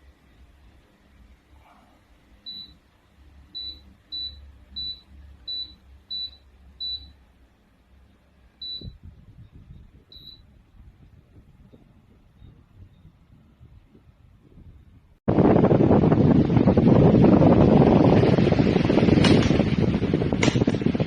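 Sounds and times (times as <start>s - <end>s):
faint low motor hum: 0.0s - 21.0s
short high beeps: 10.1s - 10.4s.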